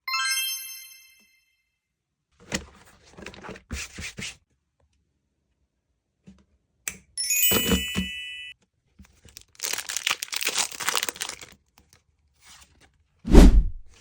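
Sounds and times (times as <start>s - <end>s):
bell-like chime: 0.0s - 1.6s, 7.2s - 8.6s.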